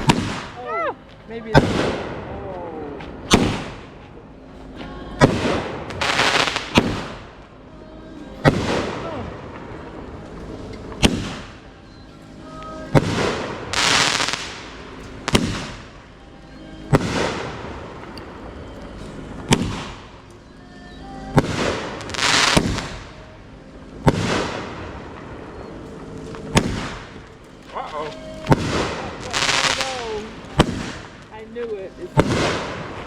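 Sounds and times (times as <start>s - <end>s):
firework bangs: 0.0s - 0.8s, 1.4s - 4.1s, 5.2s - 7.5s, 8.4s - 10.1s, 10.8s - 11.7s, 12.8s - 16.2s, 16.8s - 18.2s, 19.4s - 20.2s, 21.3s - 23.3s, 24.0s - 33.0s
hissing crackling firework tail: 0.0s - 4.3s, 5.2s - 7.7s, 8.4s - 20.3s, 21.2s - 33.0s.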